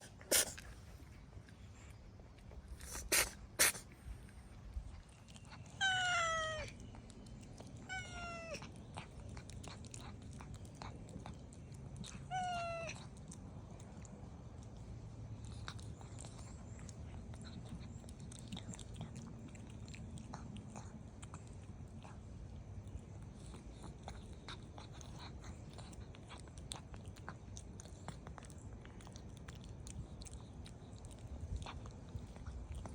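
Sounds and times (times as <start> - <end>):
cat sneezing: 0.0 - 0.6, 2.8 - 3.9
cat chewing food: 0.0 - 32.9
cat meowing: 5.7 - 6.8, 7.8 - 8.7, 12.3 - 13.0.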